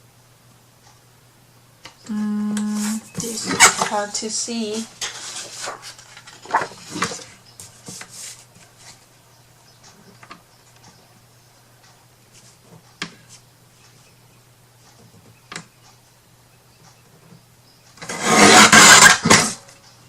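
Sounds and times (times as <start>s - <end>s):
paper rustling: 5.0s - 9.1s.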